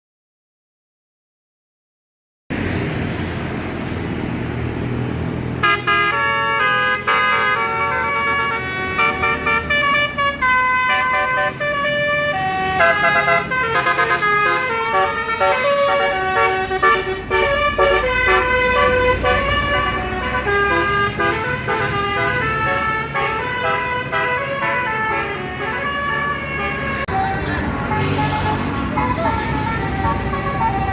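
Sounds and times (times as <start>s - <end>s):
bus engine rumbling: 2.5s - 30.9s
musical bus horn tune: 5.6s - 30.9s.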